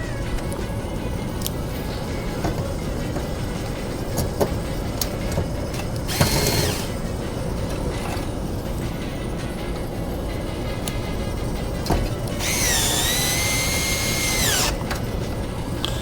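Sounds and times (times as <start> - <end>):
air conditioner humming: 0.0 - 16.0.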